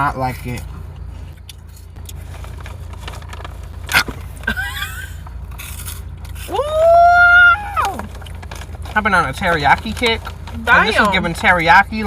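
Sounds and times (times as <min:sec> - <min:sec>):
crunching snack being eaten: 0:05.1 - 0:06.5.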